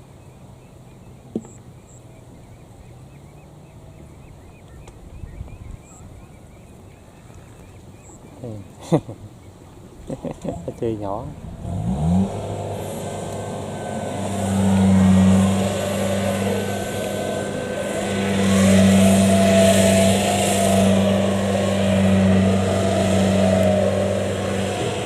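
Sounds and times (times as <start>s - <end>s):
diesel engine drone: 10.0s - 25.0s.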